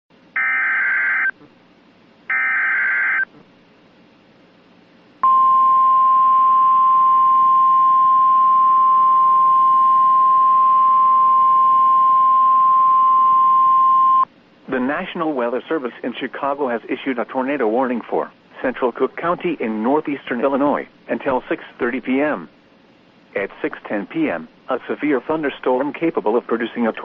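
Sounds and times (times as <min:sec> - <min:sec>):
steady alarm tone: 0:00.4 - 0:01.3, 0:02.3 - 0:03.3.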